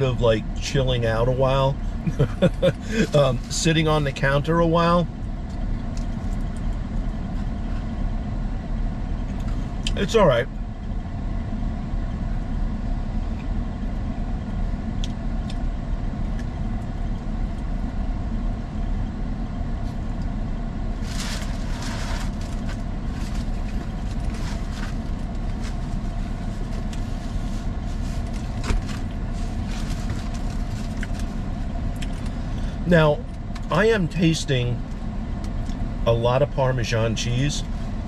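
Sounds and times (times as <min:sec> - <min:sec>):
car engine idling: 0:00.0 - 0:38.0
short rustle: 0:21.0 - 0:31.4.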